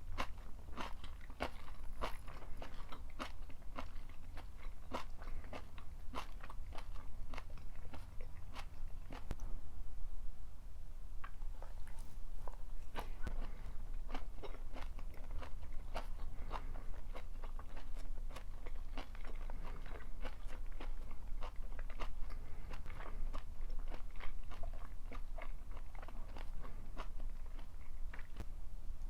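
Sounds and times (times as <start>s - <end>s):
crunchy chewing: 0.0s - 9.5s, 11.2s - 28.5s.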